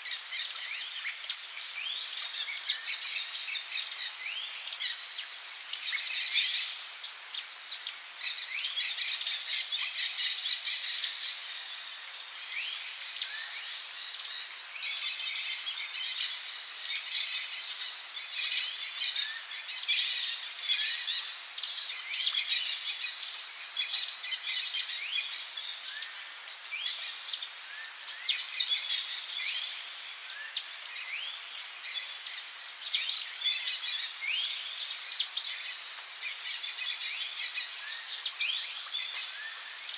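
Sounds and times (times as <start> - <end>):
high insect drone: 0.0 - 39.9
birds chirping and calling: 0.1 - 1.6, 9.2 - 11.0
loud high bird calls: 0.8 - 1.6, 9.3 - 10.9.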